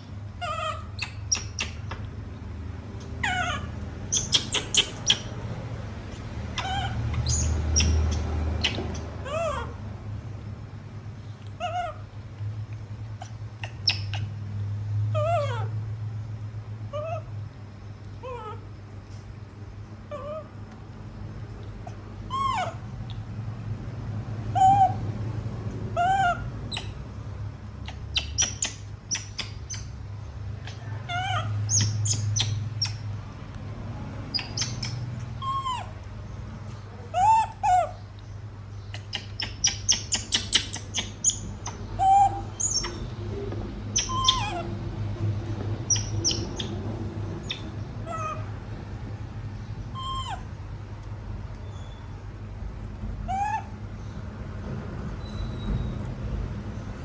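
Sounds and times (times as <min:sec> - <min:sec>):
baby monkeys squeaking: 0:00.0 - 0:02.1, 0:03.0 - 0:09.8, 0:13.2 - 0:14.4, 0:15.2 - 0:15.7, 0:21.8 - 0:23.0, 0:24.4 - 0:25.1, 0:25.9 - 0:33.3, 0:34.1 - 0:36.1, 0:36.7 - 0:44.8, 0:45.8 - 0:48.5, 0:49.9 - 0:50.6, 0:53.3 - 0:53.8.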